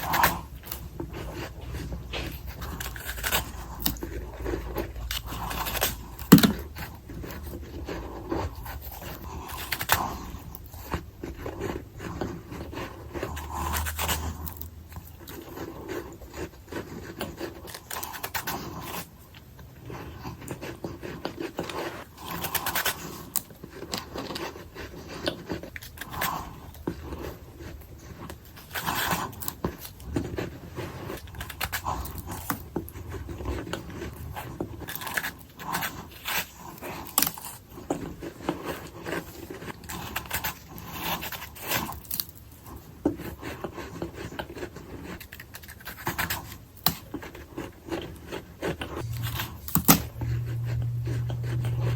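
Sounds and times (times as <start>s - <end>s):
crackly chewing: 0.0s - 51.9s.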